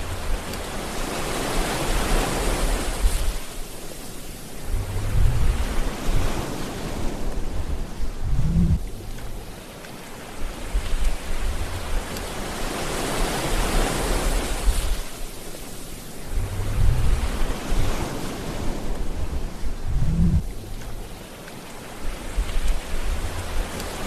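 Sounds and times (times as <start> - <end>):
sea waves breaking: 0.0 - 24.0
low rumbling: 4.6 - 9.5, 16.2 - 21.2.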